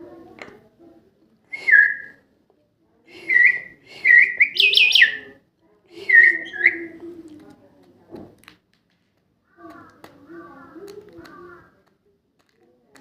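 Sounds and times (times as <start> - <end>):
myna whistling calls: 1.5 - 2.2, 3.2 - 5.3, 6.0 - 7.0.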